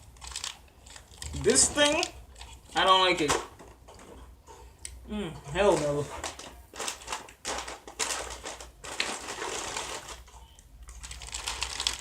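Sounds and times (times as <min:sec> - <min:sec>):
plastic packaging crinkling: 0:00.0 - 0:03.6, 0:05.6 - 0:12.0.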